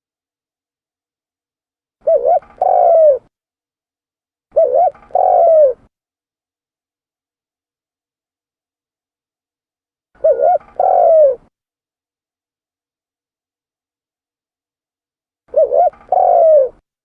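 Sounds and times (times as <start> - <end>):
dove cooing: 2.0 - 3.3, 4.5 - 5.9, 10.2 - 11.5, 15.5 - 16.8.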